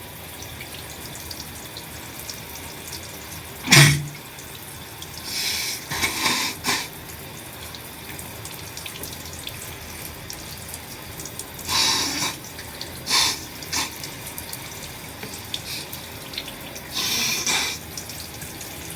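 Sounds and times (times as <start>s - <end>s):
shower water running: 0.0s - 18.9s
breath through congested nose: 5.2s - 6.9s, 11.7s - 12.4s, 13.0s - 14.0s, 16.9s - 17.8s.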